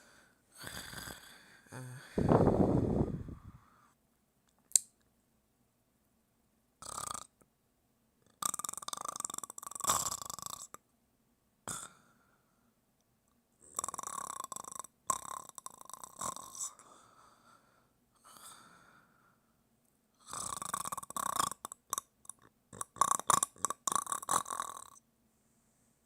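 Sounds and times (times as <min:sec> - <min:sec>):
person snoring: 0:00.0 - 0:03.8, 0:06.8 - 0:07.3, 0:08.3 - 0:10.8, 0:11.7 - 0:12.2, 0:13.6 - 0:17.6, 0:18.2 - 0:19.1, 0:20.2 - 0:25.0.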